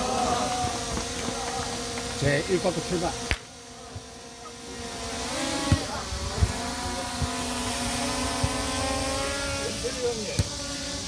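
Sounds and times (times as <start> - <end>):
drone propellers buzzing: 0.0 - 11.0.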